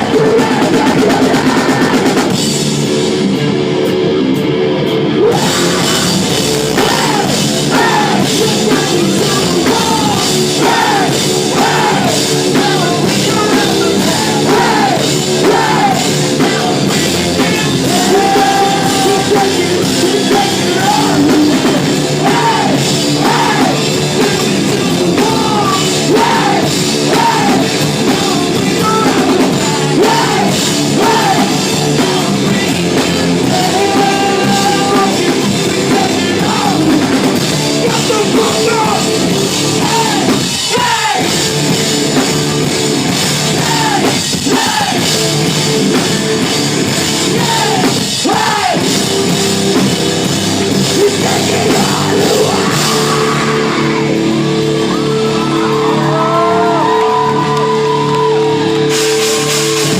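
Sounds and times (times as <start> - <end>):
person singing and shouting: 0.0 - 2.3, 5.2 - 37.1, 37.8 - 41.4, 43.5 - 45.1, 47.3 - 48.9, 50.8 - 54.2
distorted guitars: 0.0 - 59.9
drum kit: 0.0 - 59.9.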